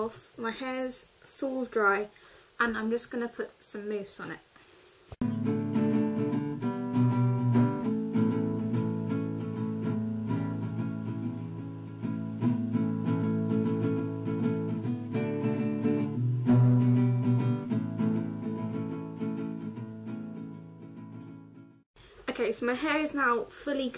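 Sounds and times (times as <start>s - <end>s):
acoustic guitar strumming chords: 5.2s - 21.8s.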